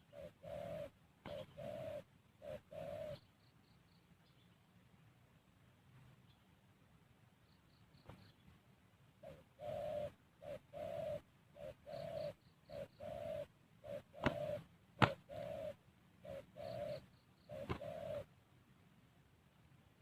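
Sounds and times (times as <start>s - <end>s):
dove cooing: 0.0s - 3.4s, 9.2s - 18.4s.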